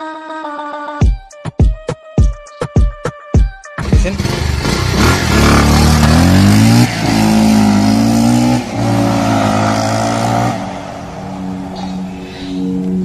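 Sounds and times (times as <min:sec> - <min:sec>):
vehicle engine accelerating through gears: 0:03.8 - 0:13.0.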